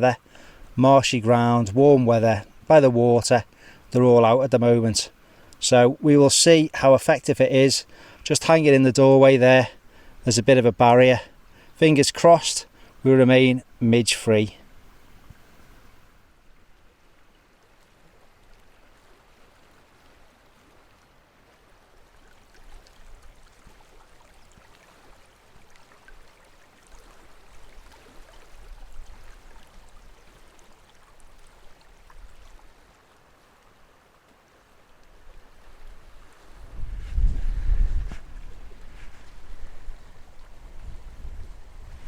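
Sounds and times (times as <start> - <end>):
gentle water sounds: 0.0 - 42.0
wind rumble on microphone: 35.8 - 42.0.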